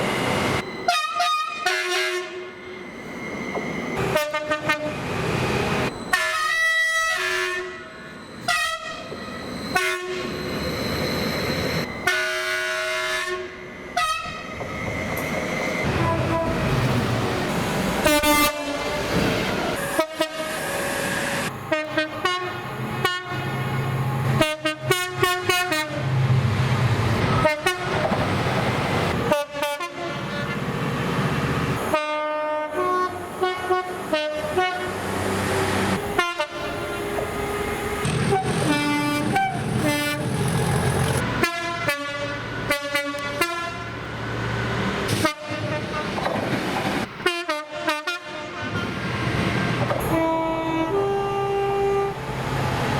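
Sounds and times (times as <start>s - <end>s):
train rumble: 0.0s - 52.9s
train horn blasts: 0.9s - 2.6s, 4.0s - 5.0s, 6.1s - 9.1s, 9.7s - 10.4s, 12.0s - 14.4s, 15.8s - 16.8s, 18.0s - 19.1s, 19.8s - 20.6s, 21.7s - 26.1s, 27.4s - 28.0s, 29.3s - 30.6s, 31.9s - 35.0s, 36.1s - 40.4s, 41.2s - 44.0s, 45.1s - 46.2s, 47.2s - 49.0s, 50.0s - 52.3s.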